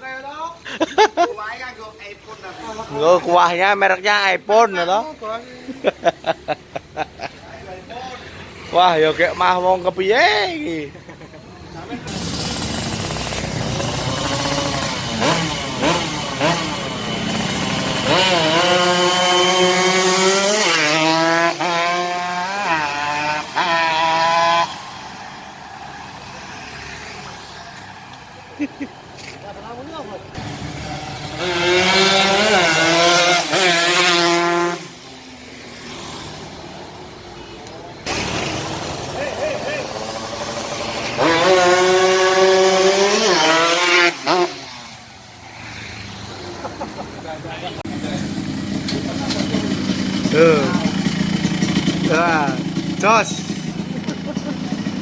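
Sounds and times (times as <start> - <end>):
motorcycle engine revving: 11.9 - 28.1, 30.3 - 37.3, 38.0 - 55.0.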